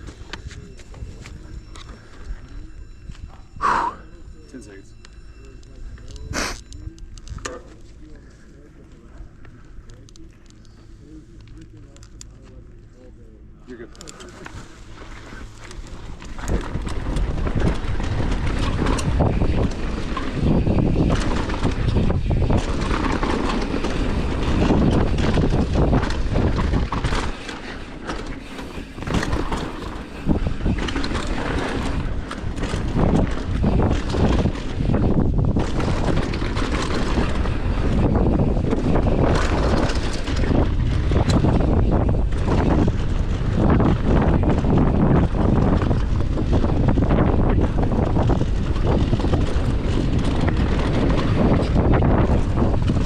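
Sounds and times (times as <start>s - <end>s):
bike rattling and clattering: 0.0s - 3.6s, 4.4s - 53.0s
tyres on dirt and rock: 14.0s - 53.0s
wind rushing over microphone: 14.2s - 53.0s.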